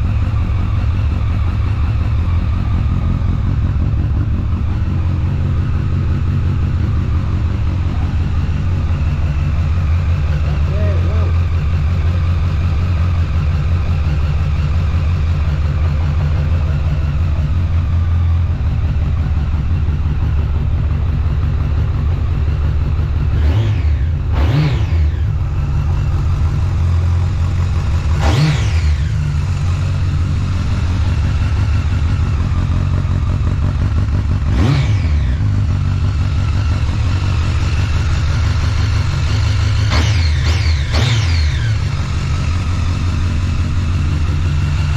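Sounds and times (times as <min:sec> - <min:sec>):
motorcycle engine idling: 0:00.0 - 0:44.9
engine throttle blips: 0:23.2 - 0:44.9.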